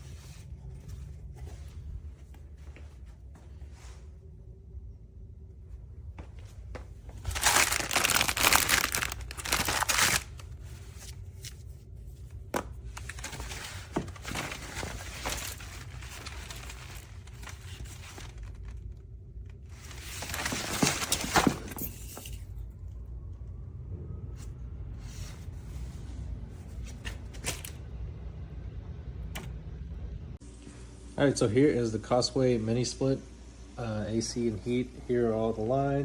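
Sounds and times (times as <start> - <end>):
packaging crinkling and tearing: 7.2 - 11.2, 12.9 - 19.0.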